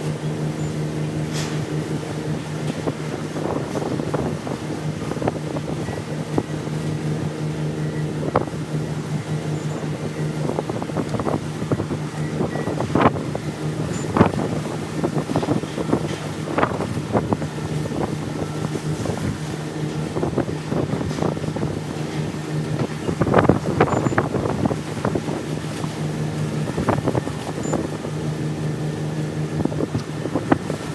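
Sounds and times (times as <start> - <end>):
low machine hum: 0.0 - 30.9.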